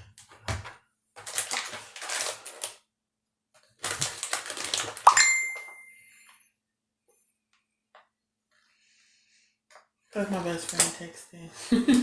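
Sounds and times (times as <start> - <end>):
makeup packaging rustling: 0.2 - 2.9
phone text alert chime: 5.1 - 6.0.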